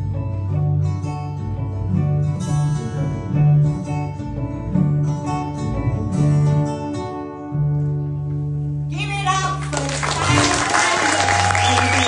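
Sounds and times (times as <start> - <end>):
acoustic guitar strumming: 0.0 - 9.6.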